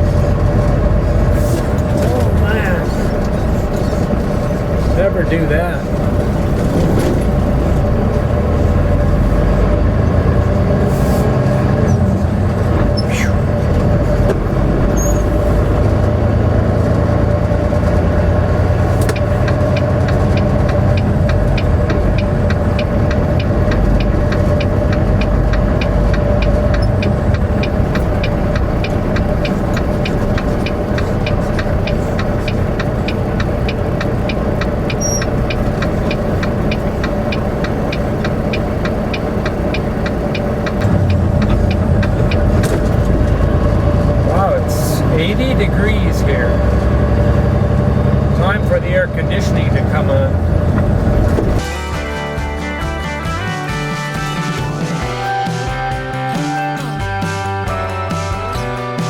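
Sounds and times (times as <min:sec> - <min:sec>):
constant hum: 0:00.0 - 0:47.6
truck engine and road rumble: 0:00.0 - 0:59.0
fast even ticking: 0:11.9 - 0:47.4.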